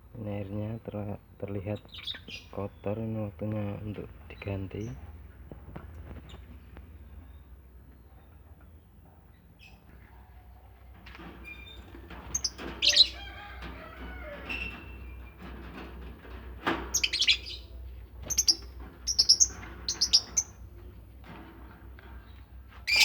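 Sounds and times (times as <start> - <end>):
quiet bird chatter: 0.1 - 23.0
lovebirds chirping: 1.5 - 5.0, 11.5 - 13.2, 16.8 - 20.7, 22.2 - 23.0.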